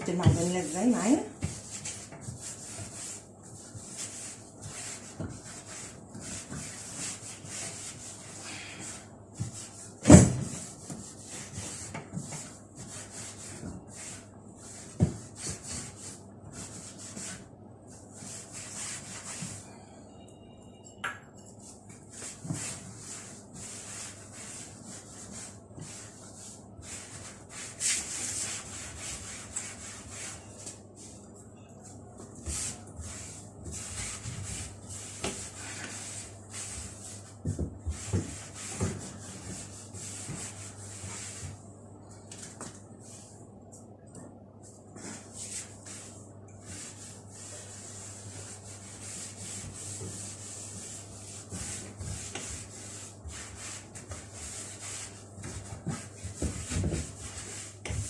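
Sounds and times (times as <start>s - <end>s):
cloth rubbing on wood: 0.1s - 19.6s.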